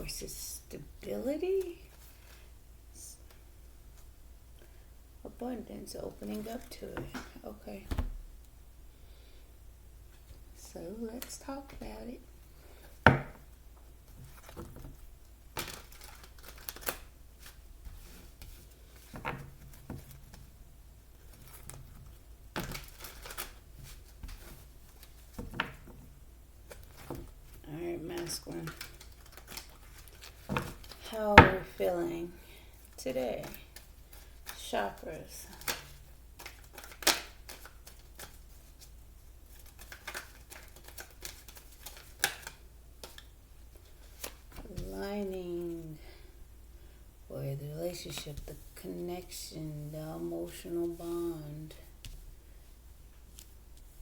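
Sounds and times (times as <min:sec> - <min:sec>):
low room hum: 0:00.0 - 0:54.0
cards rustling while shuffled: 0:12.5 - 0:20.5, 0:21.1 - 0:31.1, 0:32.8 - 0:45.4
cards clicking and tapping: 0:35.5 - 0:38.4, 0:39.6 - 0:43.3.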